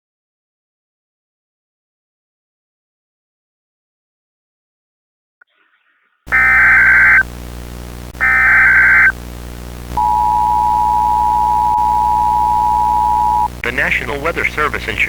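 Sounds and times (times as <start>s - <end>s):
two-tone attention signal: 6.3s - 7.2s, 8.2s - 9.1s, 10.0s - 13.5s
warbling data bursts: 6.3s - 14.8s
faint low hum: 6.3s - 15.0s.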